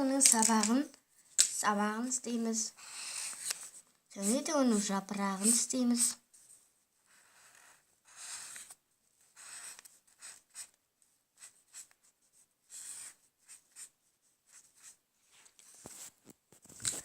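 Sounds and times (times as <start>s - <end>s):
marker drawing on paper: 1.4s - 16.1s.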